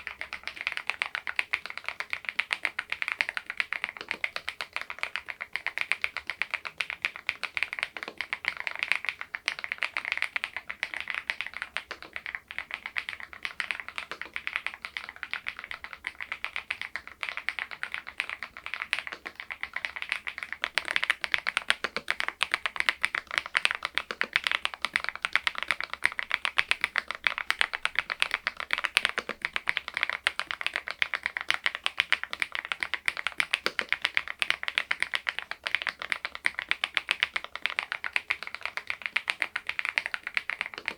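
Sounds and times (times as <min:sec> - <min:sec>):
mechanical keyboard typing: 0:00.0 - 0:40.9.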